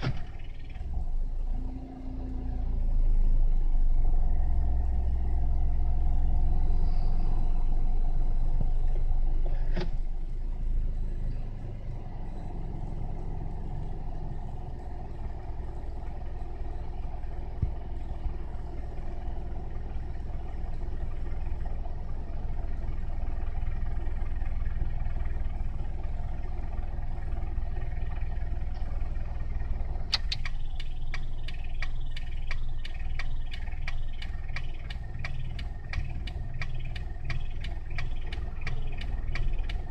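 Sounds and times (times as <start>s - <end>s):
car engine idling: 0.0s - 39.9s
rapid sharp ticks: 30.1s - 39.9s.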